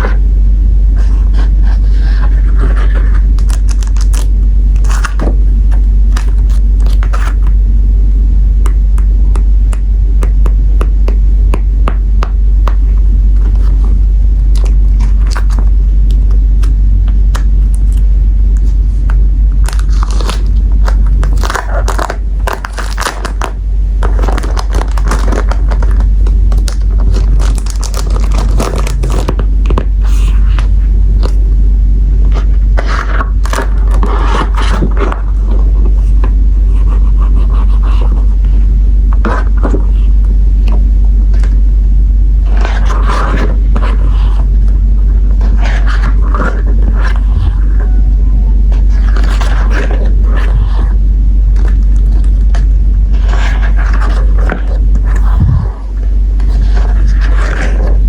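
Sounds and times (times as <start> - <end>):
steady low rumble: 0.0 - 58.0
paper and plastic crinkling: 19.6 - 29.4.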